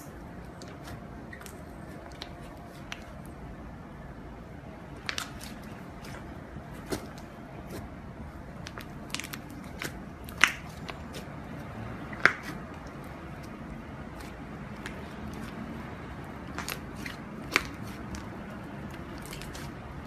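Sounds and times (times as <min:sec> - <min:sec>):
slime crackling and clicking: 0:05.0 - 0:06.2, 0:08.6 - 0:11.2, 0:16.4 - 0:19.8
slime popping: 0:08.6 - 0:11.2, 0:16.4 - 0:19.8.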